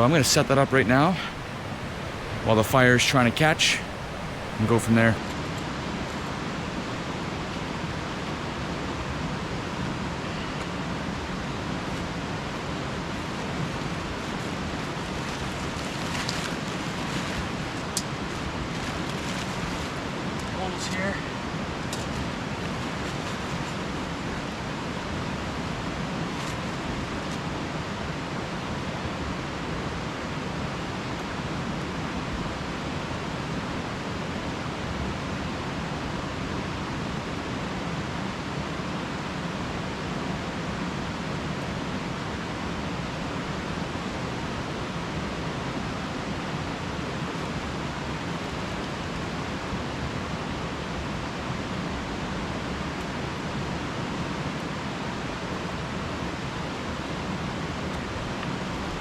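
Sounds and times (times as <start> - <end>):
river rushing: 0.0 - 10.2.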